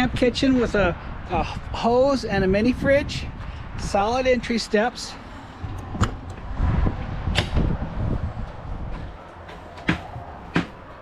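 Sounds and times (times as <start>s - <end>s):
footsteps on metal steps: 8.4s - 11.0s.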